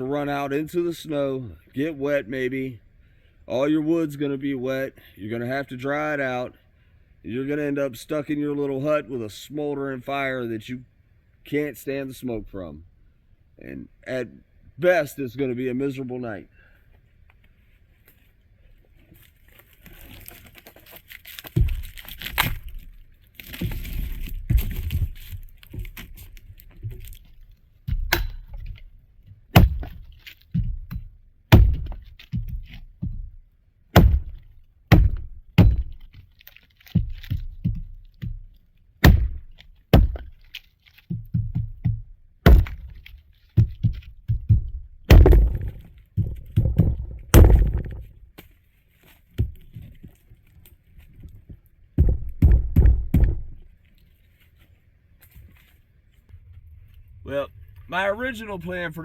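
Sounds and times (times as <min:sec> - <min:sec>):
firewood being chopped: 0:19.2 - 0:50.2, 0:52.0 - 0:53.7.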